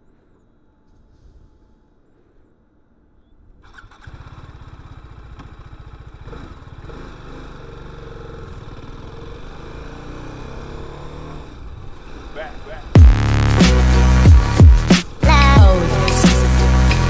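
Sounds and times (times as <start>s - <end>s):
motorcycle engine starting and revving: 3.6s - 17.0s.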